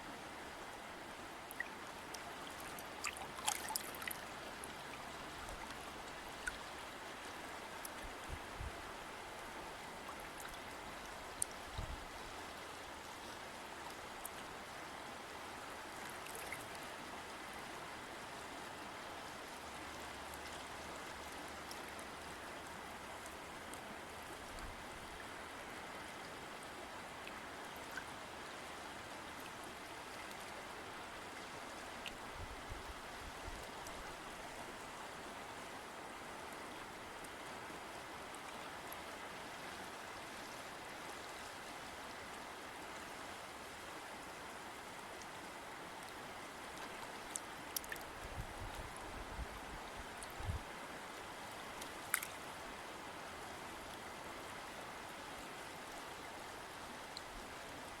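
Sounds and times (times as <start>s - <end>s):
stream flowing: 0.0s - 58.0s
faint splashes and ticks: 1.4s - 8.4s, 10.1s - 14.5s, 15.9s - 16.9s, 19.8s - 24.8s, 46.0s - 49.0s, 50.2s - 50.6s, 51.5s - 52.6s.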